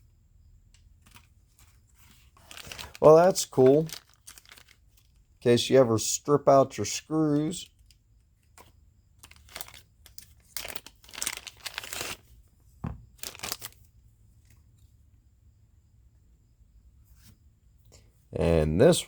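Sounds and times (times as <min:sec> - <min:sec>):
plastic packaging crinkling: 0:01.1 - 0:05.3, 0:09.2 - 0:12.3, 0:13.1 - 0:13.9.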